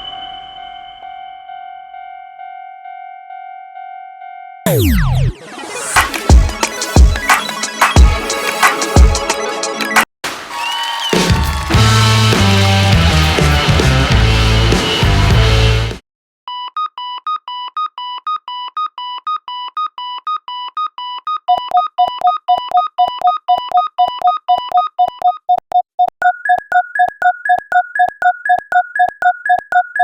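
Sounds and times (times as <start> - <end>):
railroad crossing alarm dings: 0.0 - 4.6
higher crossing alarm dropping pitch: 4.7 - 6.1
rock music: 11.2 - 16.0.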